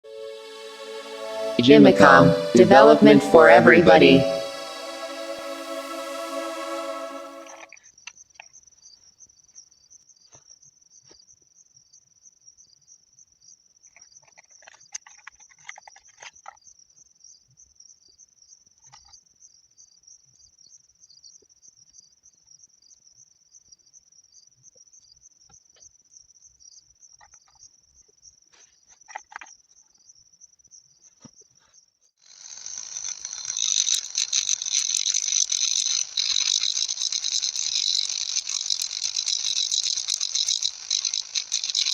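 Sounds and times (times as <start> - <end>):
crickets chirring: 32.4 - 41.9.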